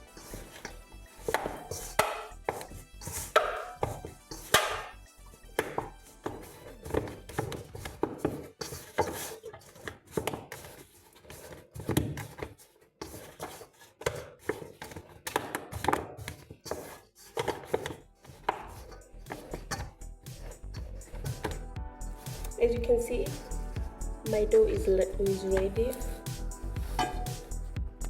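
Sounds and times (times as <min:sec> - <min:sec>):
food knocking on kitchen board: 0:03.3 - 0:04.9.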